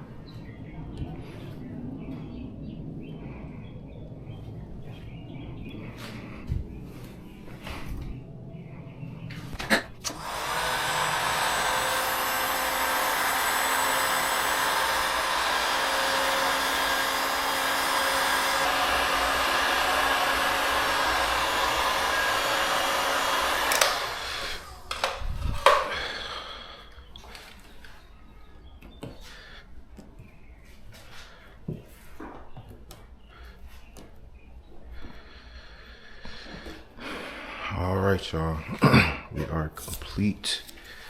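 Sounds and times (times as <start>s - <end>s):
heat gun blower running: 10.0s - 26.4s.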